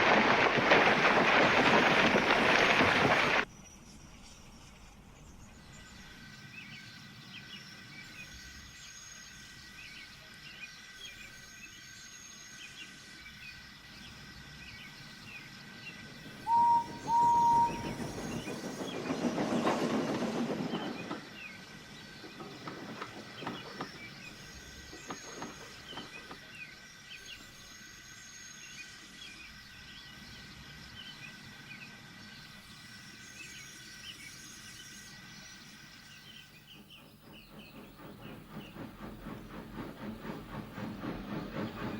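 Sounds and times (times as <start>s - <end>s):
faint country ambience: 0.0s - 28.6s
train running by: 0.0s - 41.9s
birdsong: 0.8s - 41.9s
steam locomotive whistle toots: 16.4s - 18.7s.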